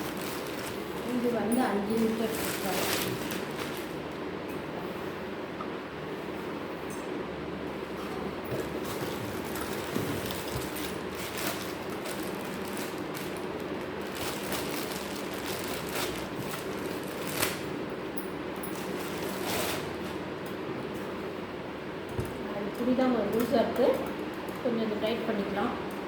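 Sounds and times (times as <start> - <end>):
packaging rustling and clicking: 0.0 - 4.2, 8.5 - 17.7
steady background hum: 0.0 - 26.0.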